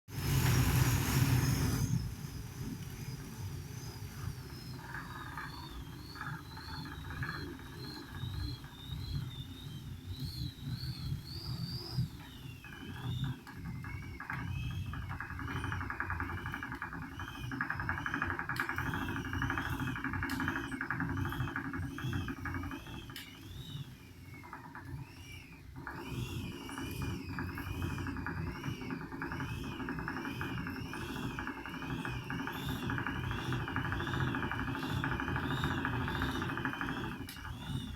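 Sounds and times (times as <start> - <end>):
thin high wavering whine: 0.1 - 37.9
rapid engine knocking: 12.7 - 23.2, 25.8 - 37.9.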